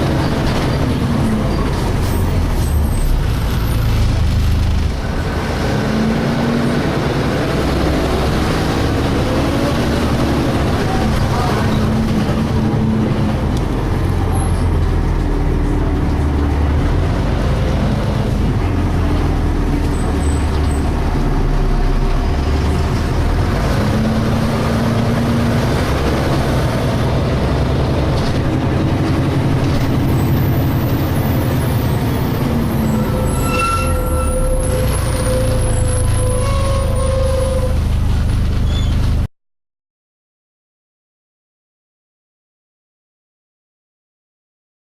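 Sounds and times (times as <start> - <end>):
bus engine and drivetrain noise: 0.0 - 39.3.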